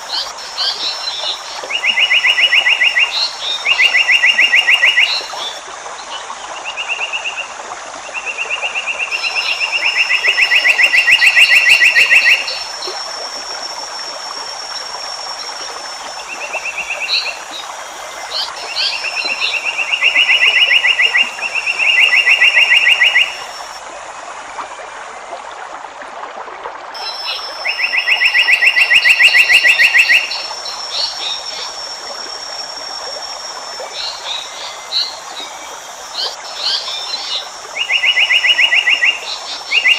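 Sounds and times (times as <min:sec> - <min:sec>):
constant hiss: 0:00.0 - 0:39.9
bird calling in buzzy trills: 0:27.0 - 0:31.6.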